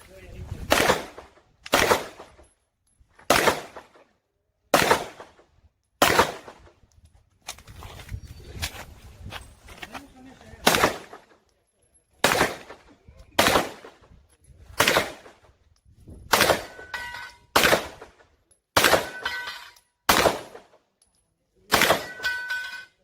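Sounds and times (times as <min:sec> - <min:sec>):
pistol shots: 0:00.7 - 0:02.4, 0:03.2 - 0:04.0, 0:04.7 - 0:05.4, 0:06.0 - 0:06.7, 0:10.6 - 0:11.3, 0:12.2 - 0:14.0, 0:14.8 - 0:15.4, 0:16.3 - 0:18.2, 0:18.8 - 0:20.7, 0:21.7 - 0:22.5
metallic ring: 0:16.7 - 0:17.5, 0:19.1 - 0:19.9, 0:22.0 - 0:23.0.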